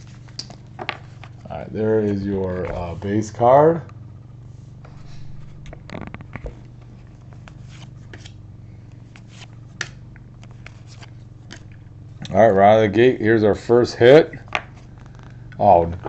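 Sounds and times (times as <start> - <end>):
steady low hum: 0.0 - 16.0
trading cards rustling: 4.7 - 11.8, 14.7 - 15.4.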